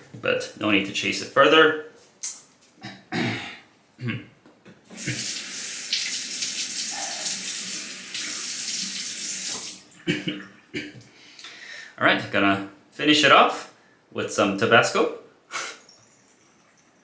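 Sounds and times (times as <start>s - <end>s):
tap water running into sink: 5.0s - 10.0s.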